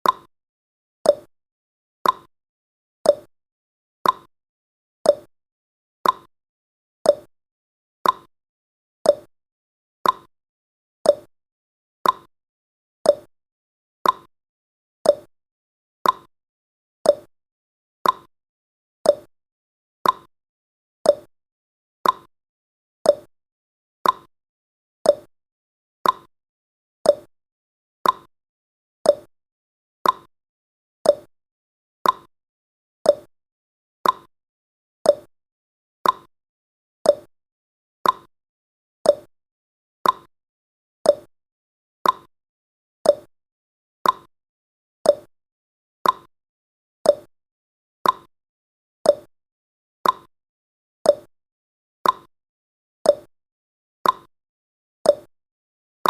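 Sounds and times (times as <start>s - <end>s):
timer ticking: 0.0s - 0.3s, 1.1s - 1.3s, 2.0s - 2.3s, 3.1s - 3.3s, 4.0s - 4.3s, 5.1s - 5.3s, 6.0s - 6.3s, 7.1s - 7.3s, 8.0s - 8.3s, 9.1s - 9.3s, 10.0s - 10.3s, 11.1s - 11.3s, 12.0s - 12.3s, 13.1s - 13.3s, 14.0s - 14.3s, 15.0s - 15.3s, 16.0s - 16.3s, 17.1s - 17.3s, 18.0s - 18.3s, 19.1s - 19.3s, 20.0s - 20.3s, 21.1s - 21.3s, 22.0s - 22.3s, 23.1s - 23.3s, 24.0s - 24.3s, 25.1s - 25.3s, 26.0s - 26.3s, 27.1s - 27.3s, 28.0s - 28.3s, 29.1s - 29.3s, 30.0s - 30.3s, 31.0s - 31.3s, 32.0s - 32.3s, 33.1s - 33.3s, 34.0s - 34.3s, 35.1s - 35.3s, 36.0s - 36.3s, 37.0s - 37.3s, 38.0s - 38.3s, 39.1s - 39.3s, 40.0s - 40.3s, 41.1s - 41.3s, 42.0s - 42.3s, 43.0s - 43.3s, 44.0s - 44.3s, 45.1s - 45.3s, 46.0s - 46.3s, 47.1s - 47.3s, 48.0s - 48.3s, 49.1s - 49.3s, 50.0s - 50.3s, 51.1s - 51.3s, 52.0s - 52.3s, 53.1s - 53.3s, 54.0s - 54.3s, 55.1s - 55.3s.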